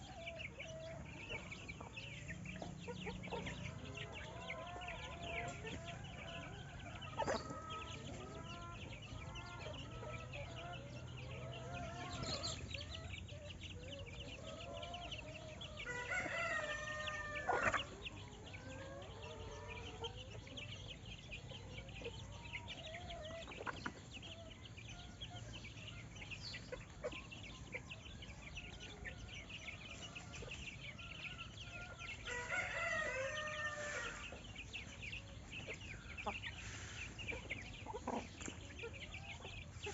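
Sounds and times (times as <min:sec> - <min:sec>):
chickens clucking: 0:00.0 - 0:39.9
rooster crowing: 0:15.8 - 0:18.3, 0:31.1 - 0:34.4.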